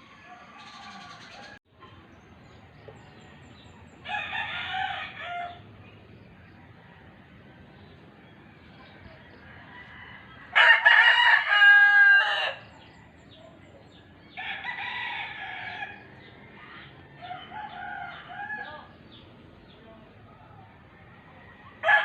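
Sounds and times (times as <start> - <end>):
rooster crowing: 0.0 - 1.6, 4.0 - 5.6, 9.3 - 12.7, 14.4 - 16.0, 17.0 - 18.9, 21.3 - 22.0.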